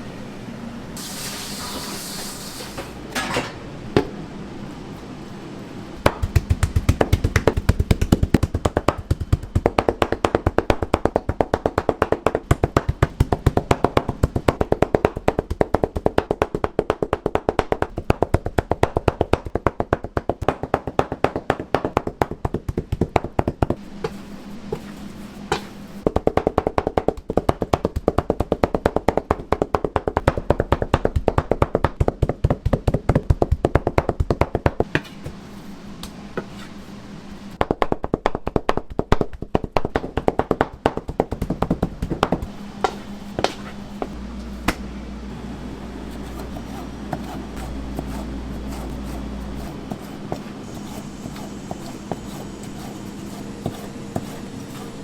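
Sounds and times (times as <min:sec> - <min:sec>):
rapid strikes on a cutting board: 0:06.0 - 0:24.8, 0:25.5 - 0:35.1, 0:37.6 - 0:44.1.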